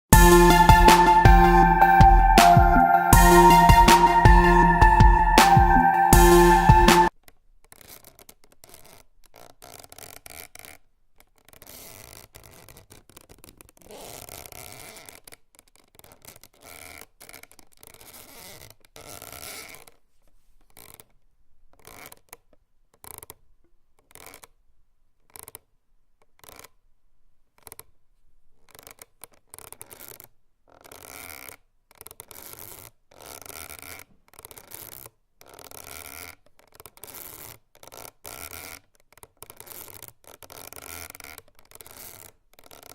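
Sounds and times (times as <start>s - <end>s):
rope creaking: 7.8s - 23.4s, 24.0s - 24.6s, 28.6s - 42.9s.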